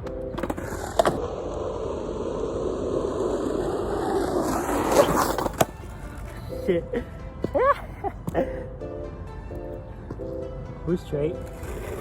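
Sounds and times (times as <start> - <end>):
skateboard wheels rolling on pavement: 0.0 - 12.0
sharp skateboard clack: 4.4 - 6.3.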